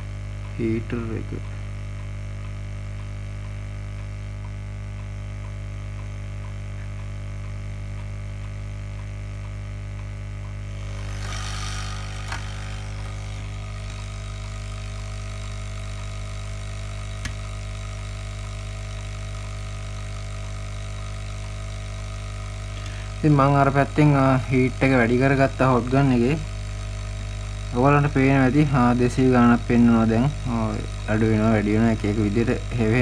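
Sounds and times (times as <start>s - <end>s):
air pump electric hum: 0.0s - 33.0s
sharp clicks: 10.4s - 18.6s.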